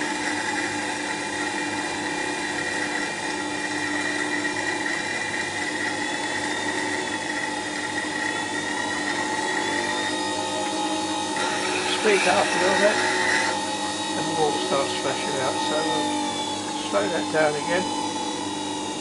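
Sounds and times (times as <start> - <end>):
wet-stone grinder motor hum: 0.0 - 19.0
gouge grinding on stone: 8.9 - 18.7.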